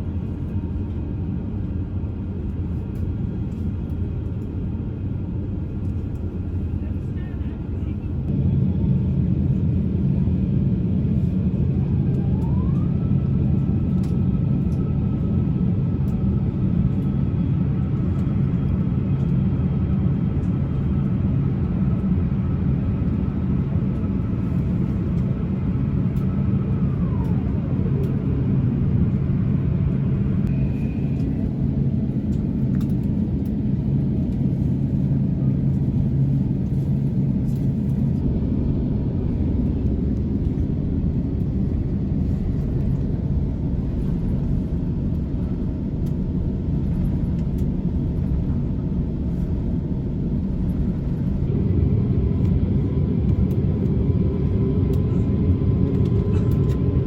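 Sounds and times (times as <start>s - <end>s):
airplane cabin low rumble: 0.0s - 57.0s.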